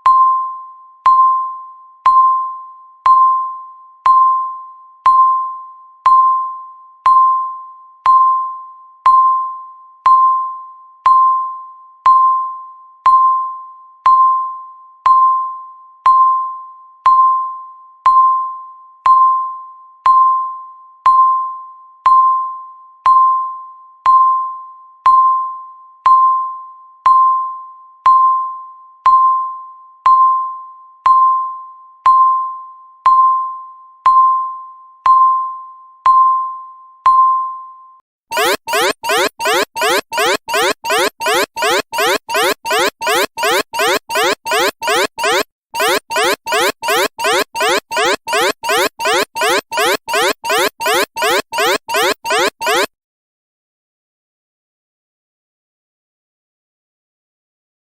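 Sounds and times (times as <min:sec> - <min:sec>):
countdown timer beeping: 0:38.3 - 0:52.9.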